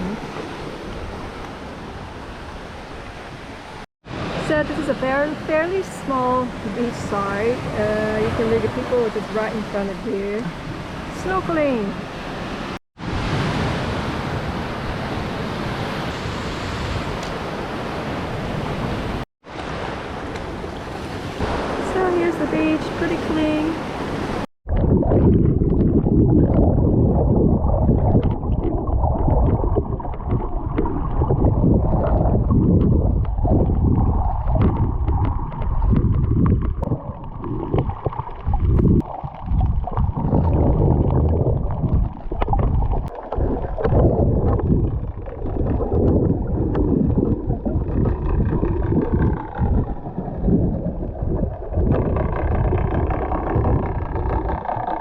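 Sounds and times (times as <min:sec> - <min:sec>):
muffled underwater water movement: 0:20.3 - 0:55.0
gurgling bubbles: 0:24.6 - 0:55.0.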